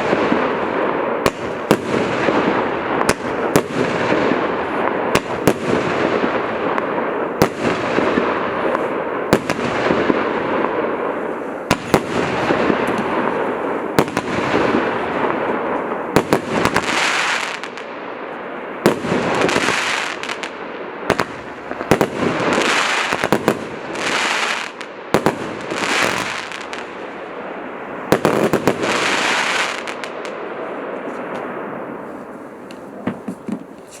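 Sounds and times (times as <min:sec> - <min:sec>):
firework rushing noise: 0:00.0 - 0:17.9, 0:18.8 - 0:27.3
firework bangs: 0:00.0 - 0:34.0
noisy firework bursts: 0:00.0 - 0:34.0.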